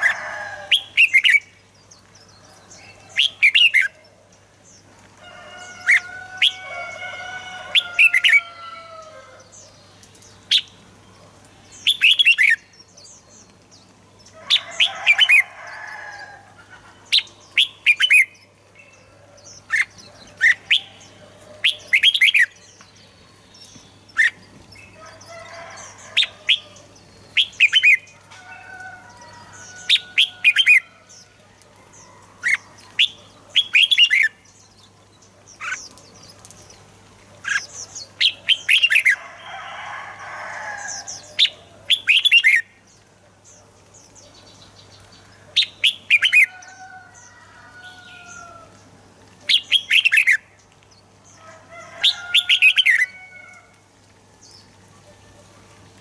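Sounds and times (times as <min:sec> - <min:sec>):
bulbuls singing whistled phrases: 0:17.2 - 0:18.5, 0:25.9 - 0:28.2, 0:45.6 - 0:46.8.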